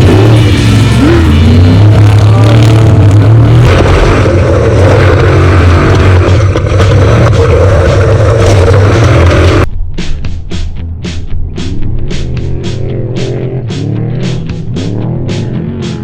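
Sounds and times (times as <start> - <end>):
off-road vehicle engine revving: 0.0 - 9.7, 10.6 - 16.0.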